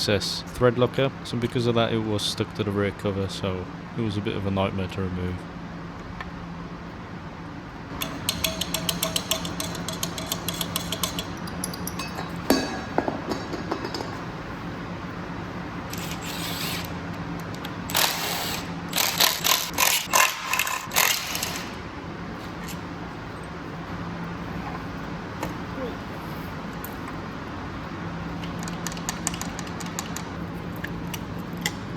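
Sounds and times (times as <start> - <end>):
hand ratchet clicking: 8.0 - 12.0.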